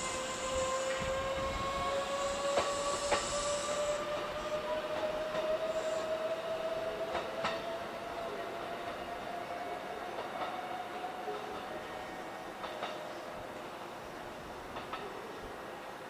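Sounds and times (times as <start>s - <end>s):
electric train motor whine: 0.0s - 8.7s.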